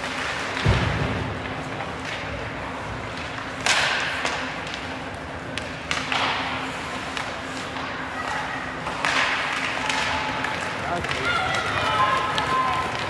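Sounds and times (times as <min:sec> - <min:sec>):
low rink hum: 0:00.0 - 0:13.0
skates scraping on ice: 0:08.8 - 0:13.0.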